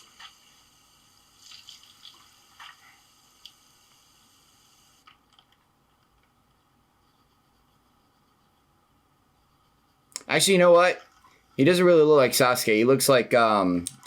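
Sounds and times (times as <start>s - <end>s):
tea dripping and splashing: 1.3s - 3.6s.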